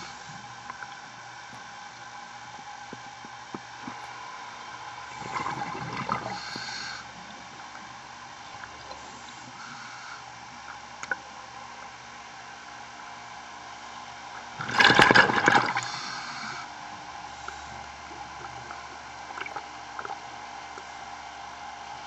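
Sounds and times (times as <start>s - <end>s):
underwater hiss: 0.0s - 0.6s, 5.1s - 7.2s, 8.9s - 10.4s, 14.6s - 17.9s
burst of bubbles underwater: 5.2s - 6.6s, 14.6s - 16.0s.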